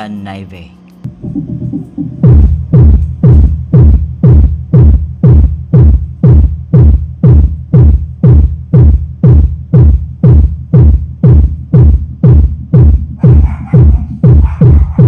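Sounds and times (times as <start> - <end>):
bass-heavy electronic music: 0.0 - 15.0
deep kick drum: 1.0 - 15.0.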